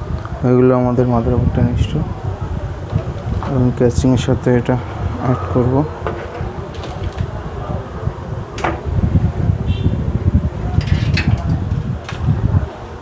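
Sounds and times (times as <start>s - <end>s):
low handling rumble: 1.0s - 13.0s.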